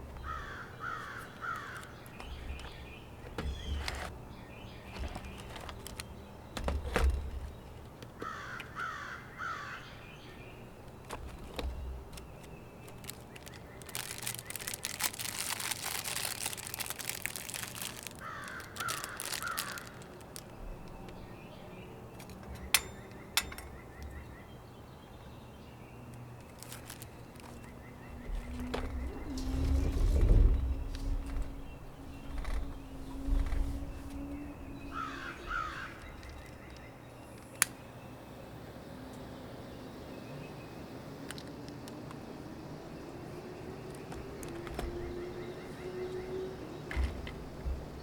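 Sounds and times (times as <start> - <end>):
crow cawing: 0.2 - 1.9, 8.2 - 9.9, 18.2 - 20.0, 34.9 - 36.1.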